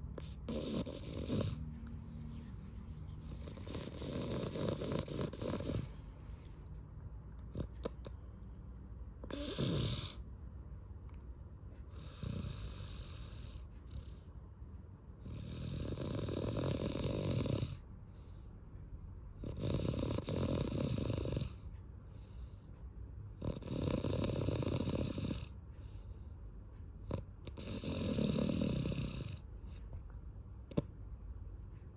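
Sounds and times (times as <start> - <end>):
quiet breathing: 0.0 - 10.2, 11.6 - 19.4, 20.9 - 31.0
child snoring: 0.1 - 1.7, 3.2 - 6.0, 9.2 - 10.2, 15.3 - 17.8, 19.4 - 21.6, 23.4 - 25.5, 27.1 - 29.4.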